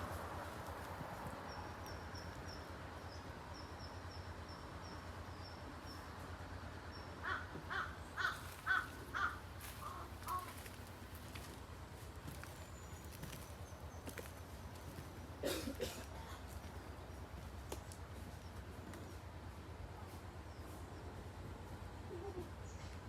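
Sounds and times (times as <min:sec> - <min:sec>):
bird calling loudly: 0:07.2 - 0:10.9.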